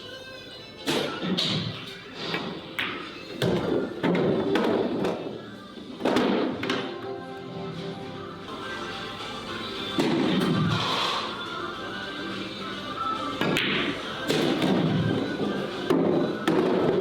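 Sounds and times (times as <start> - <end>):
background music: 0.0 - 17.0
billiard balls clacking: 0.9 - 5.4, 6.0 - 7.1, 13.4 - 17.0.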